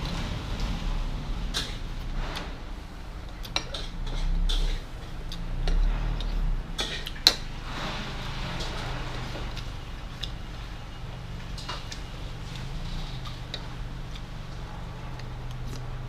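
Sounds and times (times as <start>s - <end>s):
utensils clinking against a bowl: 3.2s - 10.5s.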